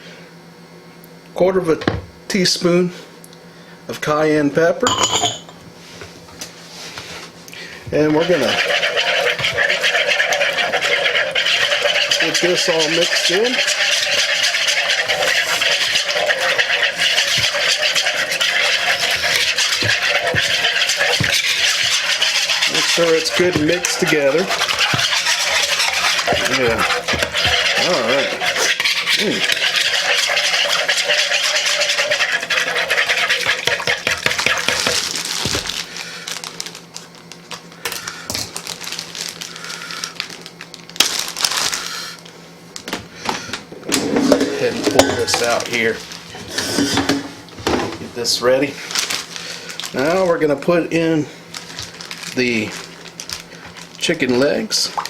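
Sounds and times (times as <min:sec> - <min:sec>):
utensil stirring in bowl: 0:06.7 - 0:35.8, 0:43.8 - 0:47.5
kitchen utensils clicking and tapping: 0:43.8 - 0:45.7.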